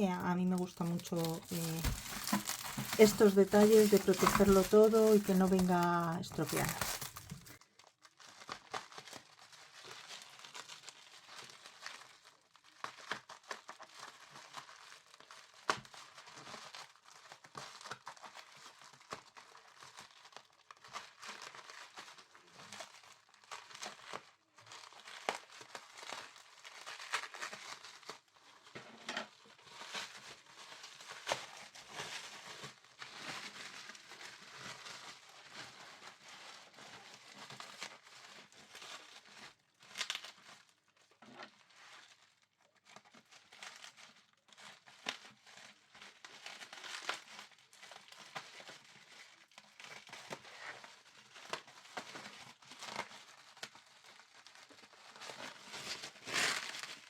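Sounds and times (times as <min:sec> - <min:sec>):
packaging crinkling: 0:00.0 - 0:22.2, 0:29.6 - 0:40.7, 0:42.8 - 0:57.0
packaging tearing: 0:00.1 - 0:17.2, 0:37.3 - 0:40.7, 0:55.2 - 0:57.0.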